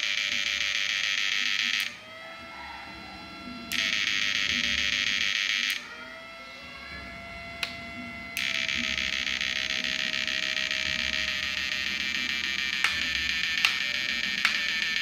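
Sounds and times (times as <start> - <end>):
inverter buzzing loudly: 0.0 - 15.0
steady high whine: 6.5 - 15.0.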